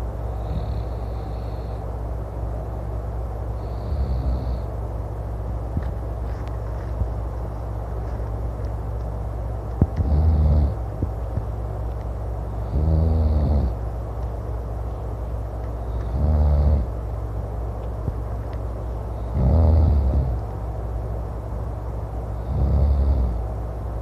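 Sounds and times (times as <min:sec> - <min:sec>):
steady low rumble: 0:00.0 - 0:22.6
man snoring: 0:00.4 - 0:01.8, 0:03.6 - 0:04.7, 0:10.0 - 0:10.8, 0:12.6 - 0:13.8, 0:16.0 - 0:16.9, 0:19.2 - 0:20.4, 0:22.4 - 0:23.4.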